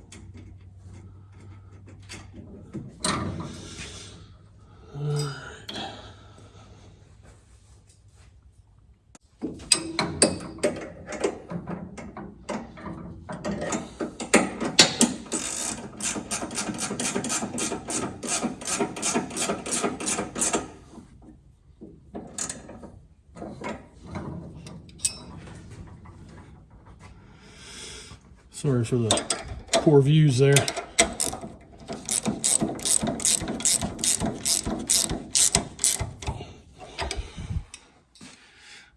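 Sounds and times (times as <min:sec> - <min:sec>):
ratchet wrench clicking: 0:14.8 - 0:20.7, 0:30.6 - 0:36.4.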